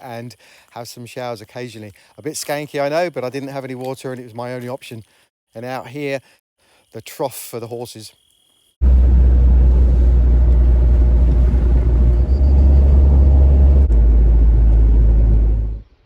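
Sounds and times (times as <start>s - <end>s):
car engine and road noise: 8.8s - 16.0s.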